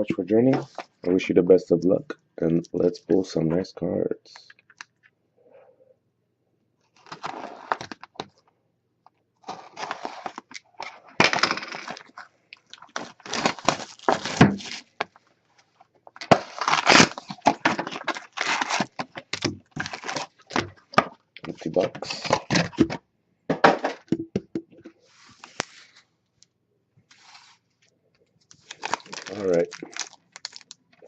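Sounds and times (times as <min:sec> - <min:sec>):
shrink wrap and cardboard tearing: 0:07.0 - 0:08.2, 0:09.4 - 0:15.1, 0:16.2 - 0:22.8, 0:28.5 - 0:30.8.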